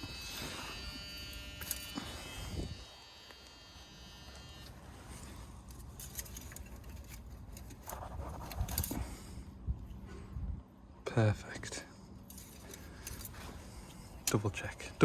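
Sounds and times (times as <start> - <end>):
faint high-pitched buzz: 0.0 - 5.8.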